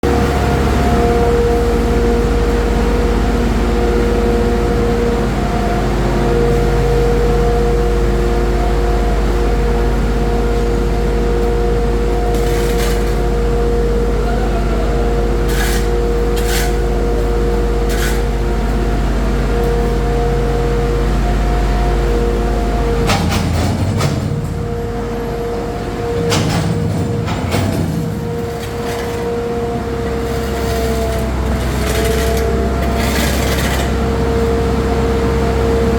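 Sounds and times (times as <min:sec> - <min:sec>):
engine humming: 0:00.0 - 0:35.9
tools knocking and scraping: 0:30.1 - 0:34.0.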